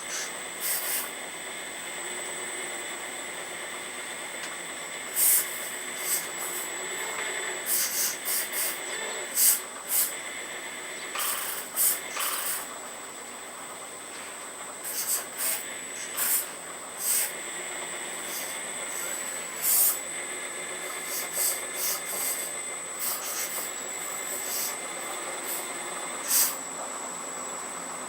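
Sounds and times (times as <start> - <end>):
short hydraulic hissing bursts: 0.0 - 1.2, 5.1 - 10.2, 11.0 - 12.8, 14.2 - 17.5, 18.1 - 26.6
hydraulic pump whining: 0.0 - 26.8.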